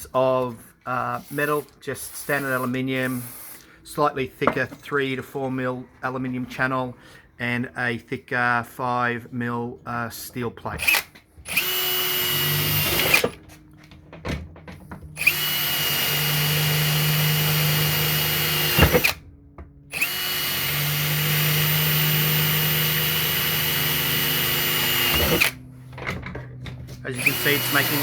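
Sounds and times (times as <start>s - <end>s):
power drill drilling into metal: 10.8s - 13.4s, 15.2s - 19.2s, 19.9s - 25.6s, 27.2s - 28.0s.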